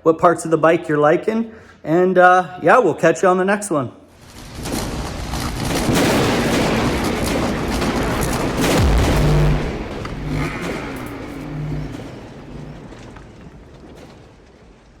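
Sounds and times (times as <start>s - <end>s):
vehicle engine revving: 7.8s - 13.6s.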